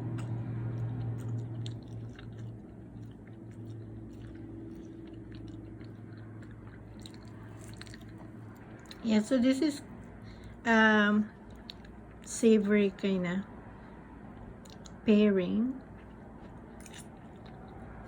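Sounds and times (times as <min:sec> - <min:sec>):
person chewing: 0:00.0 - 0:09.0, 0:11.3 - 0:12.3, 0:14.3 - 0:15.0, 0:15.8 - 0:18.0
steady low hum: 0:00.0 - 0:18.0.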